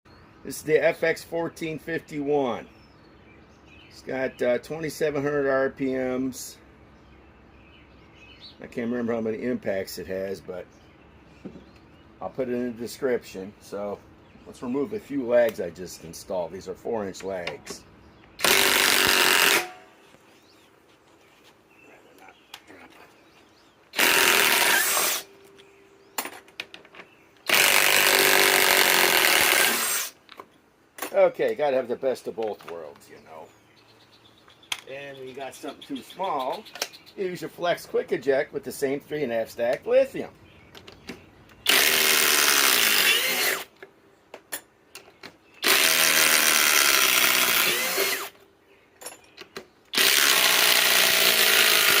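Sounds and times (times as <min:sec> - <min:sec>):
impact wrench hammering: 0:18.4 - 0:19.8
cordless driver motor whine: 0:24.0 - 0:25.3, 0:41.6 - 0:43.7, 0:45.6 - 0:48.4, 0:50.0 - 0:52.0.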